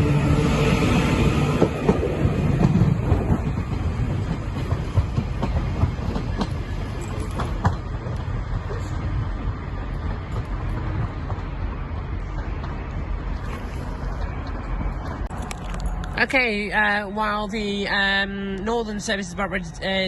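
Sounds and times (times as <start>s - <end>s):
train rumbling: 0.0s - 20.0s
wheels clicking over rail joints: 1.6s - 16.2s.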